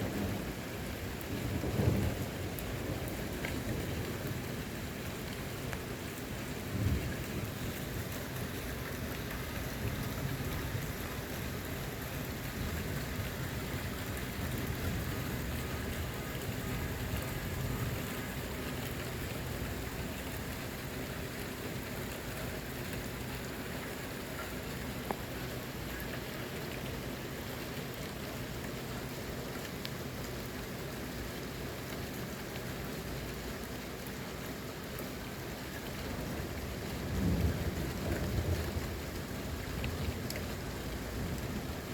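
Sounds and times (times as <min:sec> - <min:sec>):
low thunder rumble: 0:00.0 - 0:05.4, 0:06.2 - 0:18.5, 0:36.1 - 0:41.9
rain splashing on surfaces: 0:00.0 - 0:41.9.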